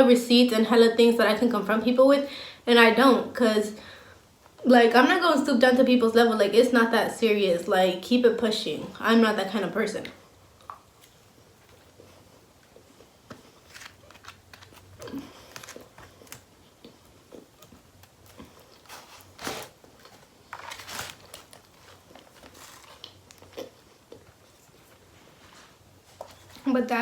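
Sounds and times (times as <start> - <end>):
person chewing food: 10.5 - 25.1.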